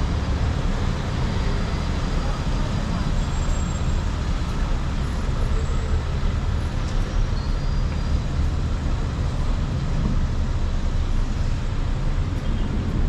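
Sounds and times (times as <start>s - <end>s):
low traffic rumble: 0.0s - 13.0s.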